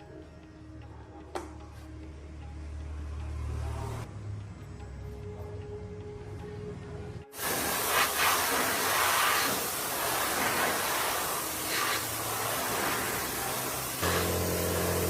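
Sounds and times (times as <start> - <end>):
loud hissing spray: 7.3 - 15.0.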